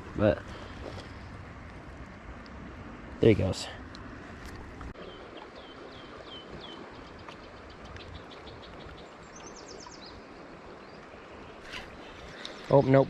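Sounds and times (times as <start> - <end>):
songbird chirping and trilling: 5.0 - 11.1.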